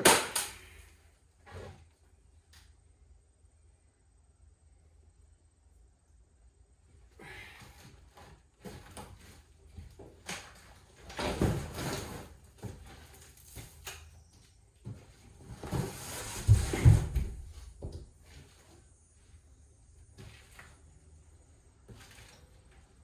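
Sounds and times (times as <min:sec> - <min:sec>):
banging and scraping: 0:14.9 - 0:18.4.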